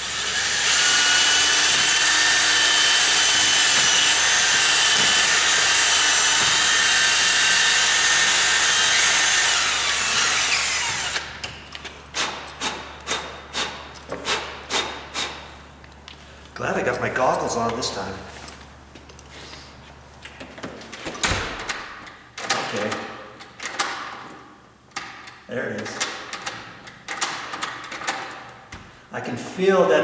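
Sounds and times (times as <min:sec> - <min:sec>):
power drill grinding wood: 0:00.0 - 0:11.4.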